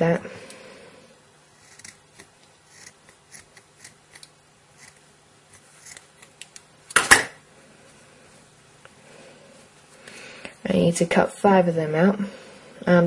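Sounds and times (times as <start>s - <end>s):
scissors snipping cotton wool: 1.6s - 6.1s.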